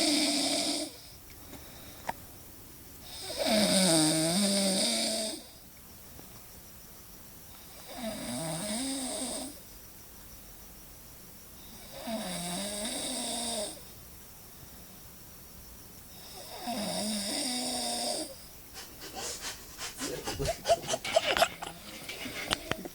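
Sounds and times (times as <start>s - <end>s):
man snoring: 16.6s - 18.3s.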